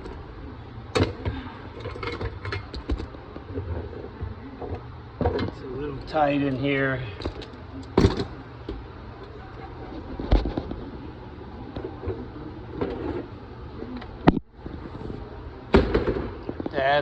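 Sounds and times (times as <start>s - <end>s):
knocks and handling noise: 0.9s - 5.6s.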